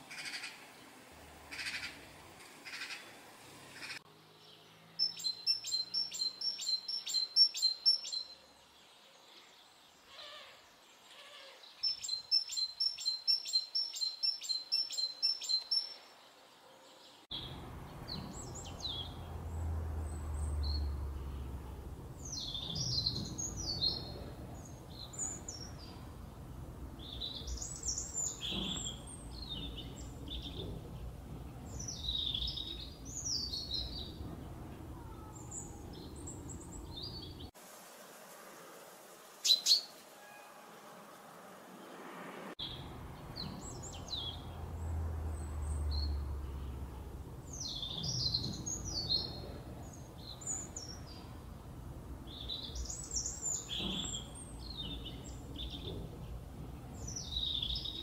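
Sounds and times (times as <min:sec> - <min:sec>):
birds twittering and chirping: 0:00.0 - 0:37.6, 0:42.6 - 0:58.0.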